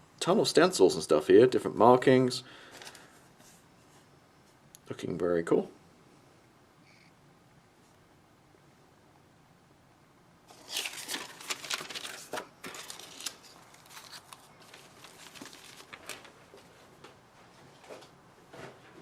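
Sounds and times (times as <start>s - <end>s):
paper and plastic packaging rustling: 2.6s - 3.6s, 10.5s - 16.9s.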